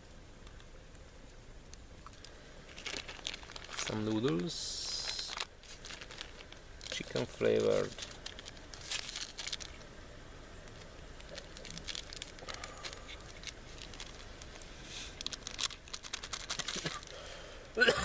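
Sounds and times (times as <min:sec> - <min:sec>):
plastic packet crinkling and tearing: 0:02.0 - 0:09.9, 0:10.6 - 0:17.2.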